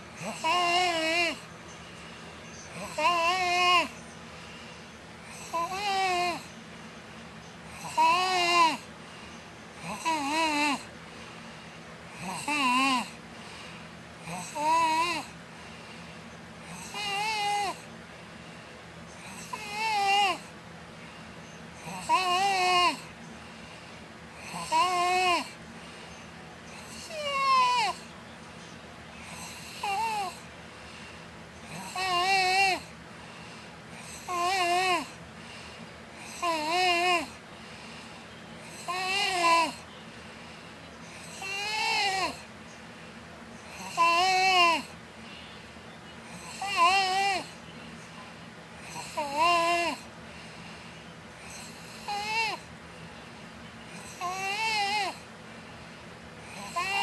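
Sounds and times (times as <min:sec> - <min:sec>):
girl snoring: 0:00.2 - 0:01.4, 0:02.8 - 0:03.9, 0:05.3 - 0:06.5, 0:07.7 - 0:08.8, 0:09.8 - 0:10.9, 0:12.2 - 0:13.2, 0:14.2 - 0:15.4, 0:16.7 - 0:17.8, 0:19.2 - 0:20.4, 0:21.8 - 0:23.0, 0:24.4 - 0:25.6, 0:26.8 - 0:28.0, 0:29.3 - 0:30.4, 0:31.7 - 0:32.9, 0:34.0 - 0:35.2, 0:36.2 - 0:37.4, 0:38.6 - 0:39.8, 0:41.2 - 0:42.5, 0:43.7 - 0:44.9, 0:46.3 - 0:47.5, 0:48.8 - 0:50.1, 0:51.4 - 0:52.7, 0:53.9 - 0:55.3, 0:56.5 - 0:57.0.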